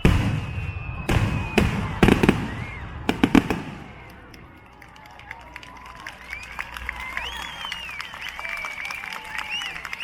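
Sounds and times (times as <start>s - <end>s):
fireworks bangs with rumbling echo: 0.0s - 4.8s.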